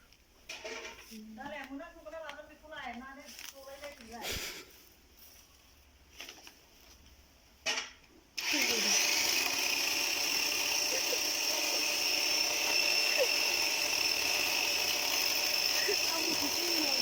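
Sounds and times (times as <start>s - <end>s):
electric chainsaw running: 8.4s - 17.0s.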